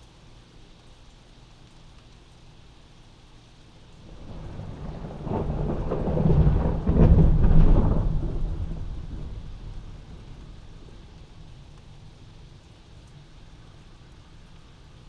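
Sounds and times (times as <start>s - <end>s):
steady rain: 0.0s - 15.0s
thunder rumbling: 4.0s - 15.0s.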